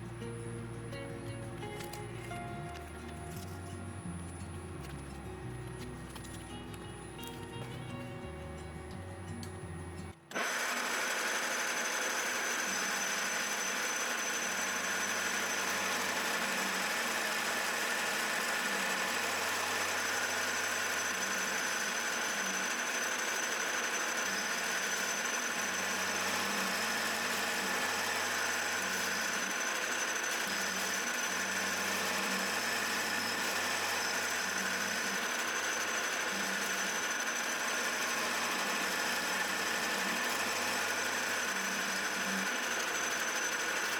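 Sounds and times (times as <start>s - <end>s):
low machine hum: 0.0s - 10.3s
milling machine running: 10.3s - 43.9s.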